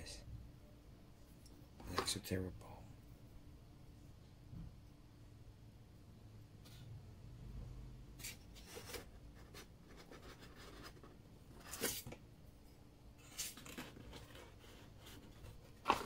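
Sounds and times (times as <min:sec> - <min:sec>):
packaging rubbing and scraping: 0:08.2 - 0:12.2, 0:13.2 - 0:16.0.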